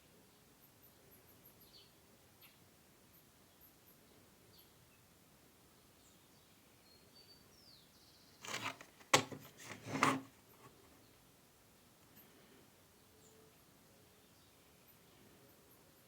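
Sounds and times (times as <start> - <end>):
rustling and scraping: 8.4 - 11.0.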